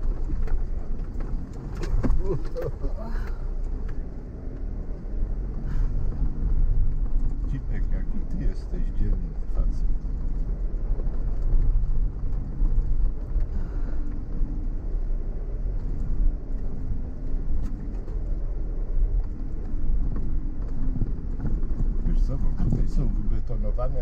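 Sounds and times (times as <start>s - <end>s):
off-road vehicle engine rumbling: 0.0s - 24.0s.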